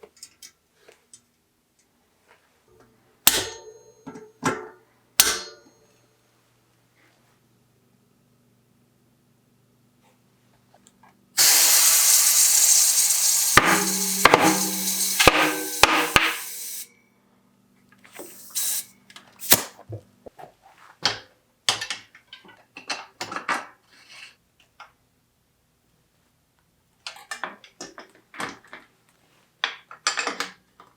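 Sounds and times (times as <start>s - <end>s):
aerosol spray hissing: 11.4s - 16.9s, 18.2s - 19.6s.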